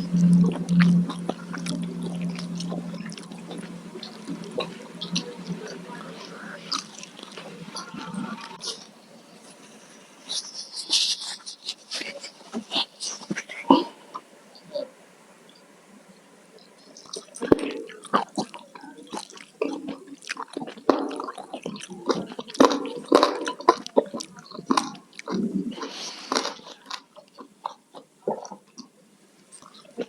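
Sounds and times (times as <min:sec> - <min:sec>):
wet chewing and mouth smacking: 0:17.0 - 0:28.9.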